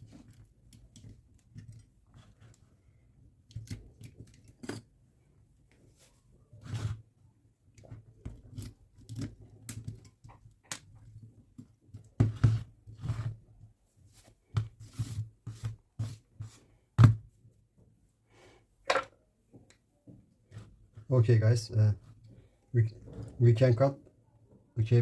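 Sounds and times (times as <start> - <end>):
clicks and scrapes of prying: 7.8 - 11.1.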